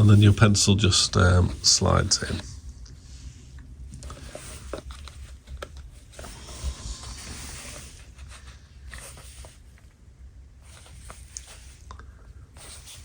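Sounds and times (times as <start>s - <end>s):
pencil sliding into holder: 6.1s - 9.6s.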